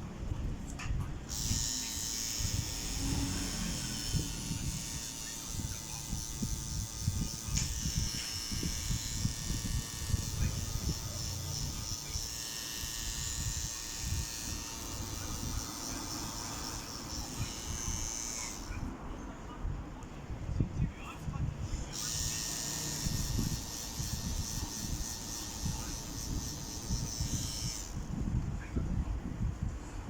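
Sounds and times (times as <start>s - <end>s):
tattoo machine buzzing: 1.2s - 18.9s, 21.9s - 28.2s.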